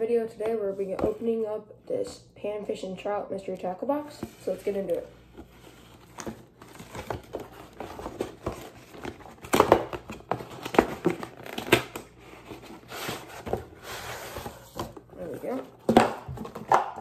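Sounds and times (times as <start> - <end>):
cardboard crinkling and tearing: 5.4 - 14.6.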